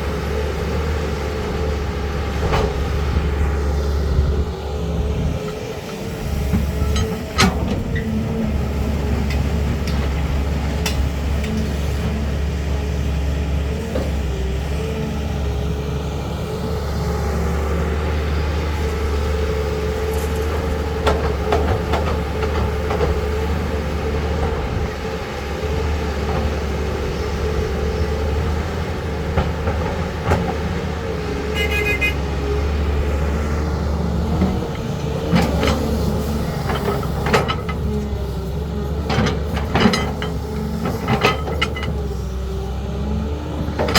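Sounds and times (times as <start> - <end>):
excavator diesel engine running: 0.0 - 43.9
high beeps: 31.6 - 32.2.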